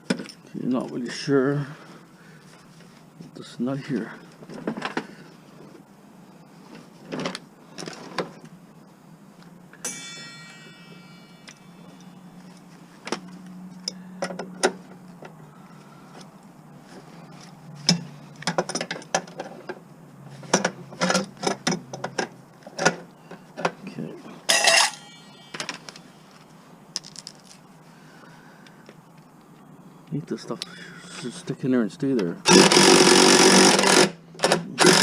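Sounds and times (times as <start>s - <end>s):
steady low hum: 8.6s - 18.4s
ringing metal strike: 9.8s - 12.6s, 24.5s - 26.2s.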